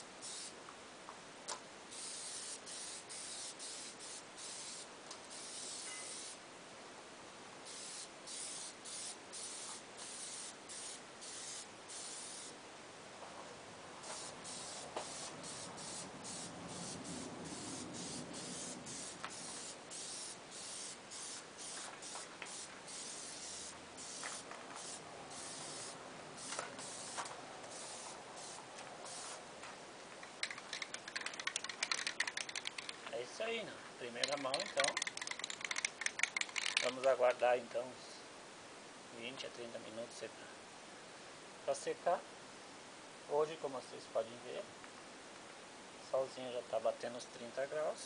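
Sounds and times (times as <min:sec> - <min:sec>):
spray hissing bursts: 0:00.2 - 0:00.5, 0:01.9 - 0:06.4, 0:07.6 - 0:12.6, 0:14.0 - 0:29.4.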